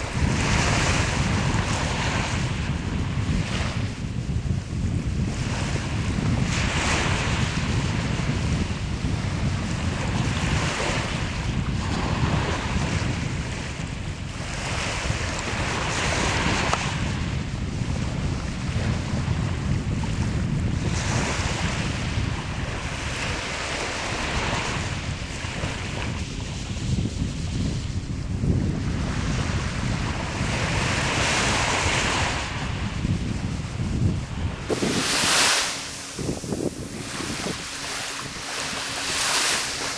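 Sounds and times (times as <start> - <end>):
wind rumble on microphone: 0.0 - 39.9
small waves breaking: 34.3 - 39.9.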